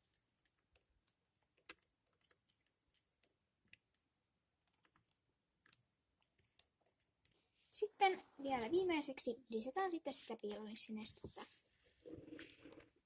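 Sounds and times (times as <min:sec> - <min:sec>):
stick stirring glue in bowl: 0:00.0 - 0:07.8.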